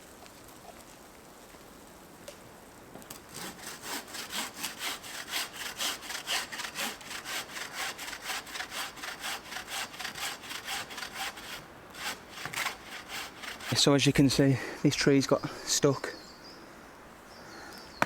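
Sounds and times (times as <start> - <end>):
hand saw cutting wood: 3.3 - 13.9.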